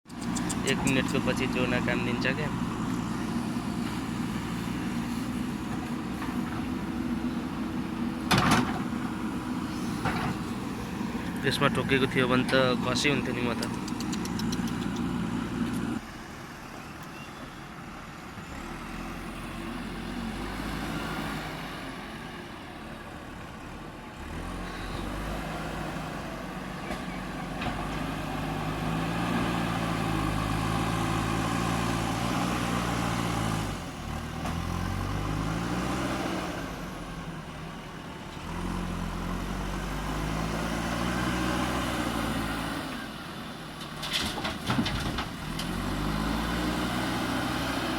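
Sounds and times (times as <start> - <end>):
diesel engine revving: 0.1 - 16.8, 17.7 - 47.9.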